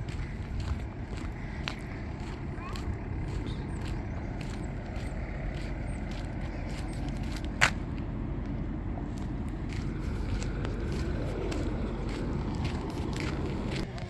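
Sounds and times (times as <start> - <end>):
low outdoor rumble: 0.0 - 14.0.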